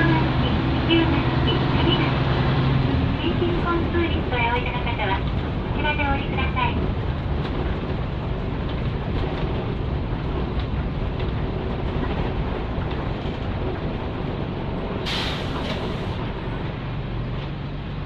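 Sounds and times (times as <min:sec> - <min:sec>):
diesel bus engine drone: 0:00.0 - 0:18.0
short hiss of air: 0:15.0 - 0:16.2.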